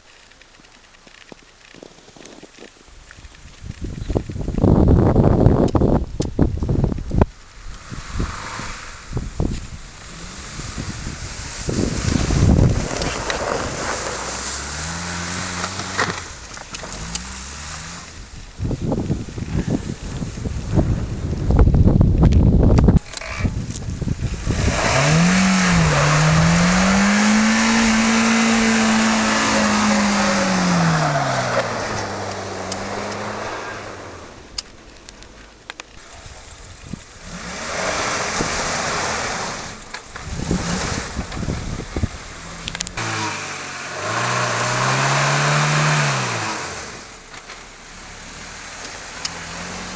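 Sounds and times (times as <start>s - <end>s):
wind and tyre hiss: 0.0s - 49.9s
steady rushing noise: 3.2s - 44.8s
car engine revving: 7.4s - 21.2s, 23.0s - 34.8s, 36.0s - 49.9s.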